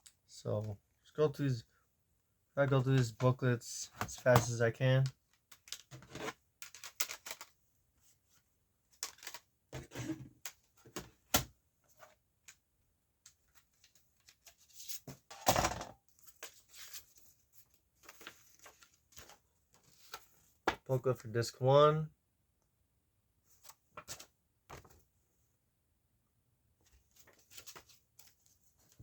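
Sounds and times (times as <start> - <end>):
booklets and cases being handled: 2.6 - 12.6, 13.2 - 20.9, 23.6 - 25.1, 26.8 - 29.0.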